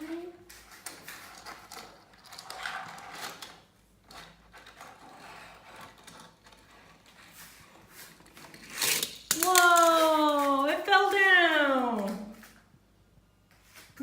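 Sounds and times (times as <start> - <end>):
plastic toys clicking and rattling: 0.8 - 7.3, 8.4 - 10.9.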